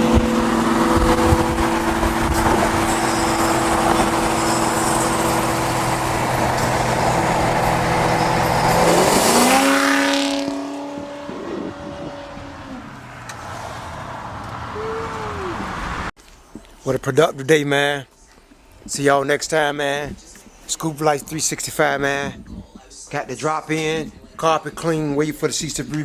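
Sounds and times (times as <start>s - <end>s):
car engine revving: 0.0s - 16.1s.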